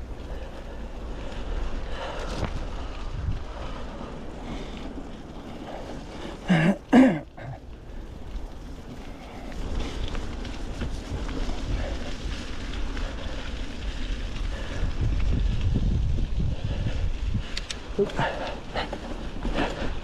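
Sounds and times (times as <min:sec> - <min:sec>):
wind buffeting microphone: 0:00.0 - 0:06.5, 0:07.3 - 0:20.0
bike rolling on muddy trail: 0:00.0 - 0:20.0.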